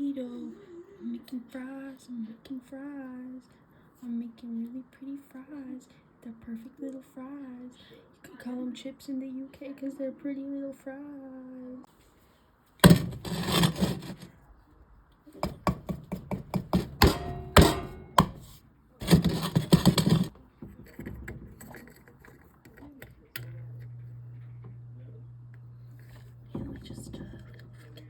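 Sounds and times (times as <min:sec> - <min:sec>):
scraping and rustling: 0:12.0 - 0:14.4, 0:16.6 - 0:22.6
steady low hum: 0:15.4 - 0:20.3.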